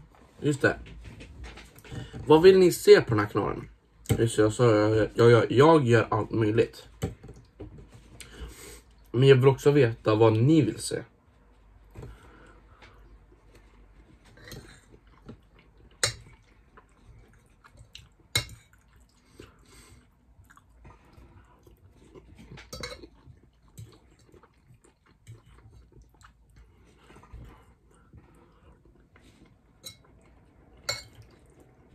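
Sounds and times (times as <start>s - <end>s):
chewing: 11.4s - 31.9s
cutlery clinking on a plate: 22.5s - 23.1s.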